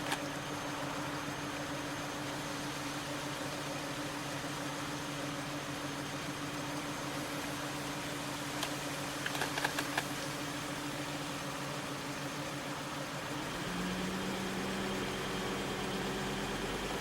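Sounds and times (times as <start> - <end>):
car engine running: 0.0 - 17.0
steady hum: 0.0 - 17.0
quick clicks: 8.6 - 10.1.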